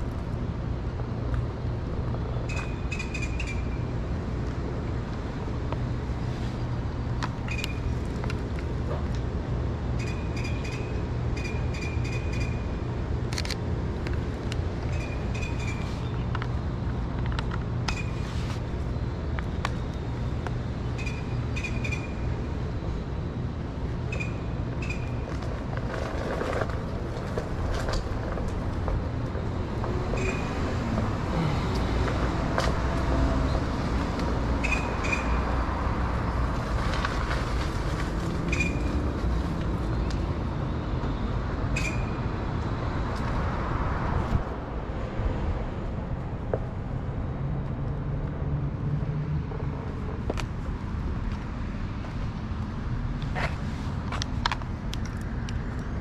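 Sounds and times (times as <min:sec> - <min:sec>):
vehicle passing: 0:28.6 - 0:41.4.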